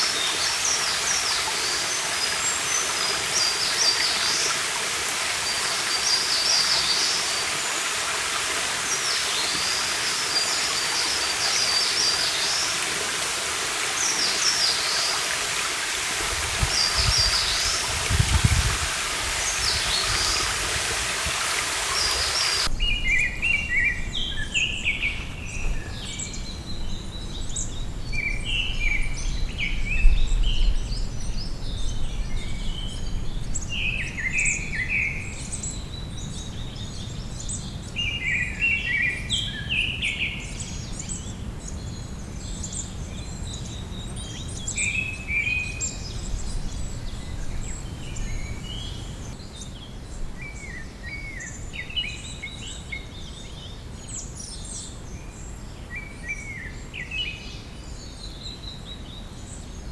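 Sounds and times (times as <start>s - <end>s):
stream rushing: 0.0s - 23.2s
songbirds singing: 0.0s - 59.9s.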